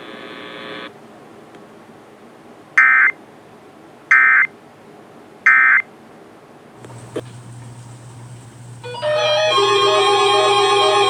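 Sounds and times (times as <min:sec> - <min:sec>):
faint hiss: 0:06.8 - 0:11.0.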